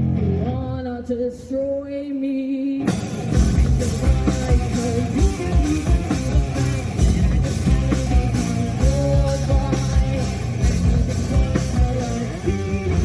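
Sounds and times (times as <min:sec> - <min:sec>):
person singing: 0:00.2 - 0:13.0
live rock band: 0:02.8 - 0:13.0.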